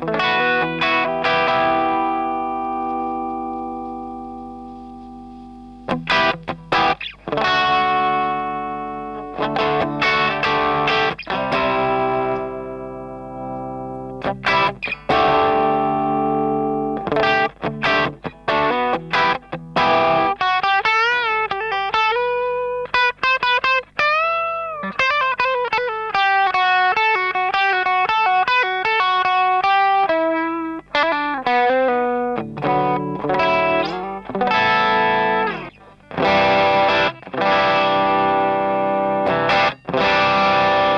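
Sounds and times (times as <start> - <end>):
overdriven electric guitar: 0.0 - 40.9.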